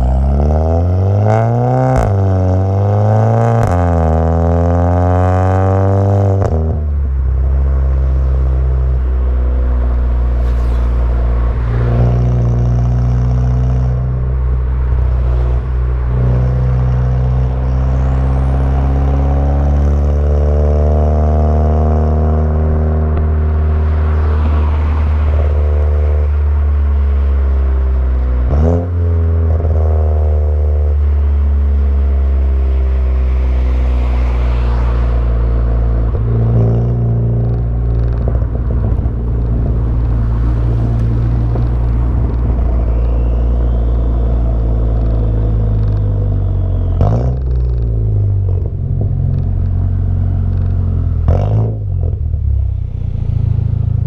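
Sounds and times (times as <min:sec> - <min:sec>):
car engine droning: 0:00.0 - 0:54.0.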